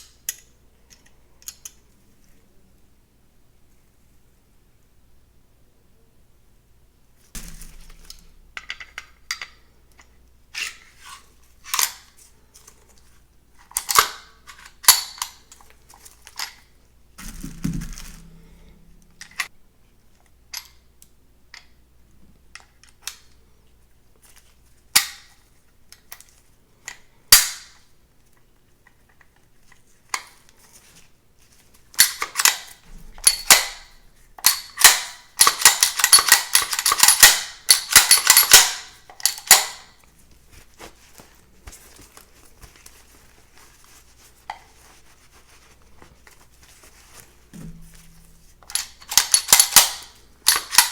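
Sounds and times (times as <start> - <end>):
metallic clicks of pistol parts: 0.0 - 1.8, 7.4 - 12.1, 13.6 - 16.6, 20.5 - 21.7, 32.0 - 39.9, 47.6 - 50.9.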